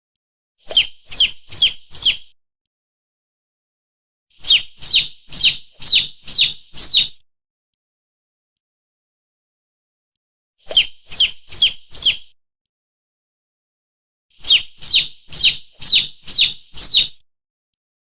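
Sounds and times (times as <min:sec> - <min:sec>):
shrill bird-like chirps: 0:00.6 - 0:02.4, 0:04.3 - 0:07.2, 0:10.6 - 0:12.4, 0:14.3 - 0:17.2.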